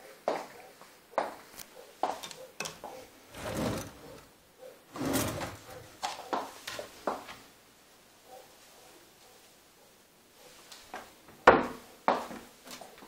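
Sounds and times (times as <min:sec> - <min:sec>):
drawers knocking shut: 0:02.2 - 0:04.3, 0:04.9 - 0:05.9
drawer sliding rumble: 0:02.6 - 0:04.3, 0:04.9 - 0:05.9.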